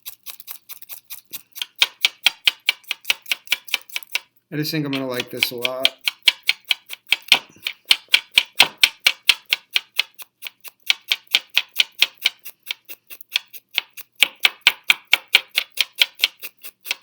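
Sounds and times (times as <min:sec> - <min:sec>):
rapid even clicking: 0:04.9 - 0:10.3.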